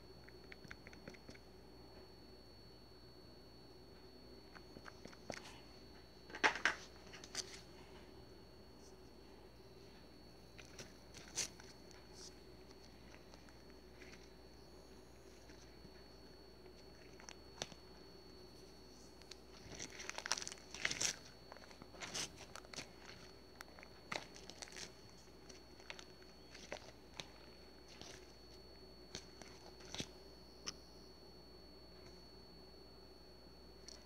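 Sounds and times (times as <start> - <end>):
faint electrical hum: 0.0 - 34.0
crinkling and clicking handling noises: 4.4 - 8.1, 9.8 - 30.8.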